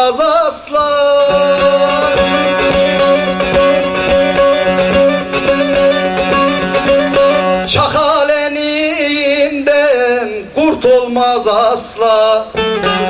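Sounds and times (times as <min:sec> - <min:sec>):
held drone notes: 0:01.2 - 0:07.7
plucked string melody: 0:01.2 - 0:08.2, 0:12.6 - 0:13.0.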